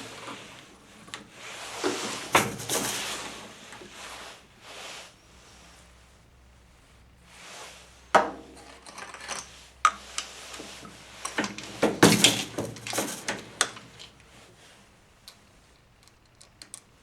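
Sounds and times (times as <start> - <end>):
reloading press metallic clunk: 1.8 - 3.4, 10.6 - 14.2
clicks and rattles: 8.6 - 14.3, 15.3 - 16.9.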